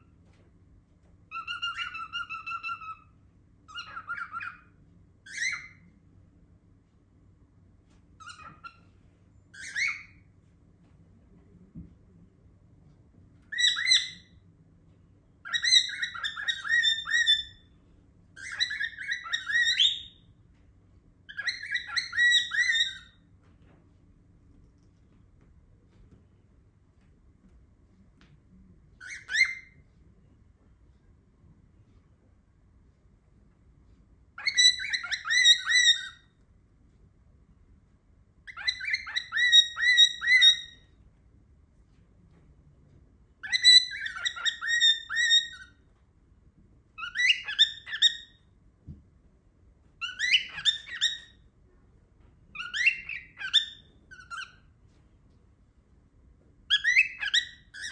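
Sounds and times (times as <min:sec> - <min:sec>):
cockatiel chirping: 0:01.3 - 0:05.9, 0:08.2 - 0:10.4, 0:13.4 - 0:14.4, 0:15.4 - 0:17.8, 0:18.4 - 0:20.3, 0:21.3 - 0:23.2, 0:29.0 - 0:29.9, 0:34.4 - 0:36.3, 0:38.5 - 0:41.0, 0:43.4 - 0:45.8, 0:47.0 - 0:48.4, 0:50.0 - 0:51.5, 0:52.5 - 0:54.7, 0:56.7 - 0:57.9.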